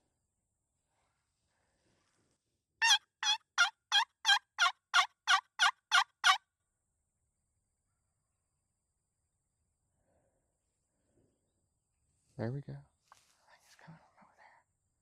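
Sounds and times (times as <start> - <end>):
turkey call yelps: 2.8 - 6.4.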